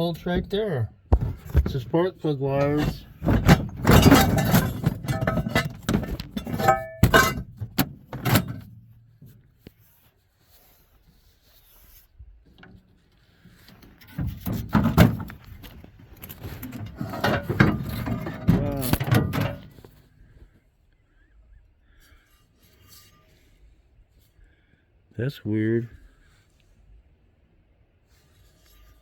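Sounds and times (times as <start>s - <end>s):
handling knocks: 0.2s - 8.8s, 13.8s - 19.8s
rustling: 1.2s - 20.6s.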